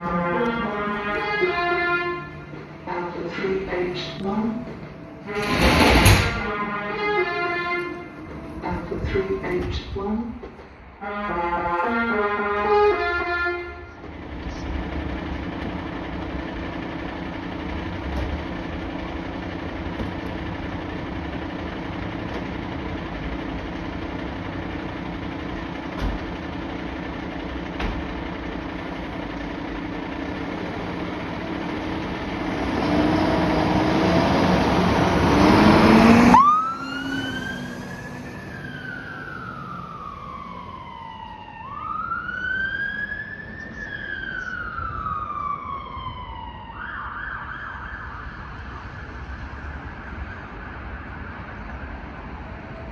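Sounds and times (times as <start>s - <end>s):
diesel engine running: 0.0s - 10.8s, 13.9s - 41.6s
siren wailing: 29.6s - 48.6s.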